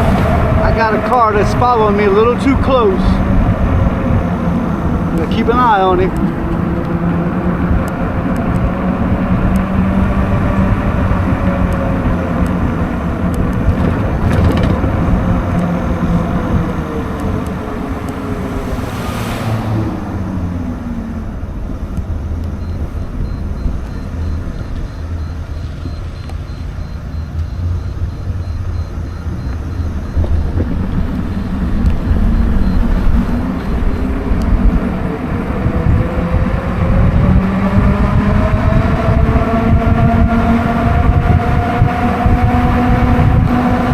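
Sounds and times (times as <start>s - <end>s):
e-bike motor whine: 0.0s - 43.9s
tyres on wet road: 0.0s - 43.9s
wind noise: 0.0s - 43.9s
brief rushing sound: 18.0s - 20.9s.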